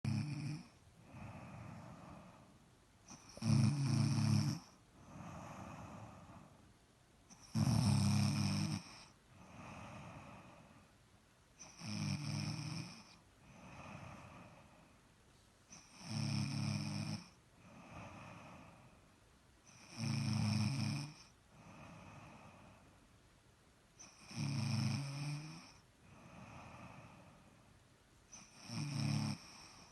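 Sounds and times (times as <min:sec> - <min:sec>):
loud buzzing snores: 0:00.1 - 0:02.4, 0:03.1 - 0:06.4, 0:07.4 - 0:10.6, 0:11.6 - 0:14.6, 0:15.8 - 0:18.7, 0:19.7 - 0:22.6, 0:24.0 - 0:27.2, 0:28.4 - 0:29.9
soft breathing: 0:00.5 - 0:03.5, 0:04.4 - 0:07.9, 0:08.6 - 0:11.8, 0:13.0 - 0:16.0, 0:17.3 - 0:19.9, 0:21.1 - 0:23.2, 0:25.7 - 0:28.5, 0:29.4 - 0:29.9.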